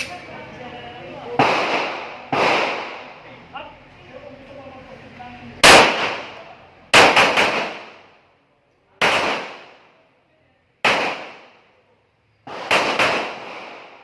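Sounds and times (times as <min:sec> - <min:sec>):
handgun shots: 0:07.0 - 0:08.0.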